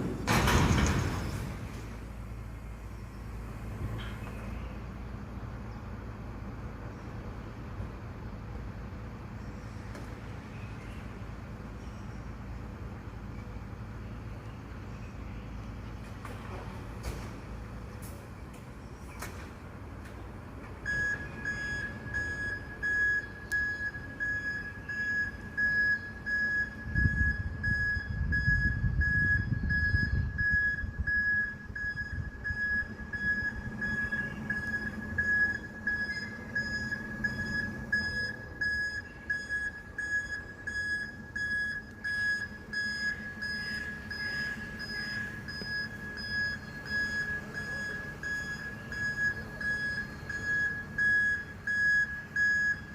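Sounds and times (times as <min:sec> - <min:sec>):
truck engine rumble: 0:00.0 - 0:52.9
reversing alarm beeping: 0:20.8 - 0:52.9.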